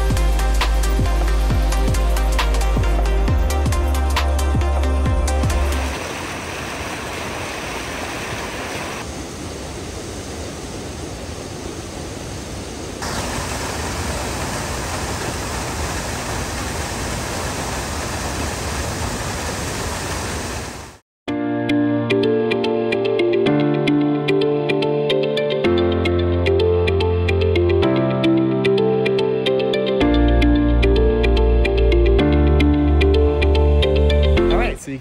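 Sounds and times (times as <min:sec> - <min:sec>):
waterfall rushing: 0:05.5 - 0:21.0.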